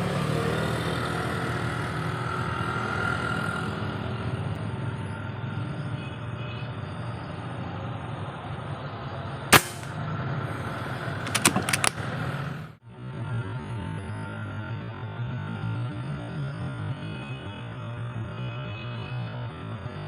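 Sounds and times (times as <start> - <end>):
air rifle shot: 9.5 - 10.0.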